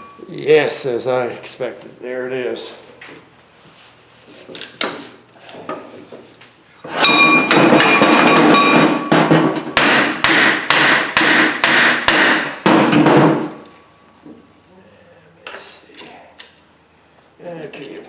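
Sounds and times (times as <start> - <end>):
hammer striking metal: 6.9 - 13.6.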